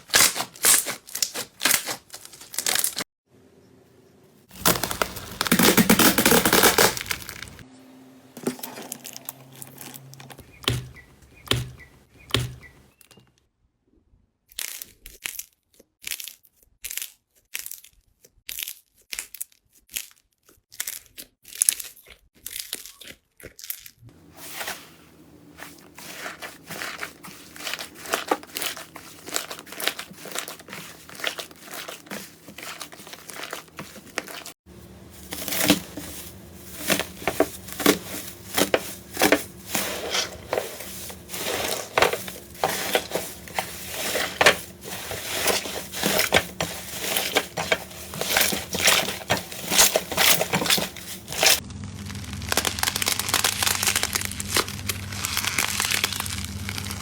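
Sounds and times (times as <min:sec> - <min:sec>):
slime squeezed by hand: 0:49.7 - 0:57.0.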